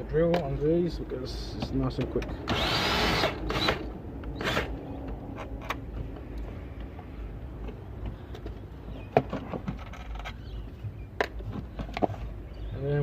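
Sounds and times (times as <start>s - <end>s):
cordless drill whirring: 2.5s - 3.8s, 4.4s - 4.7s.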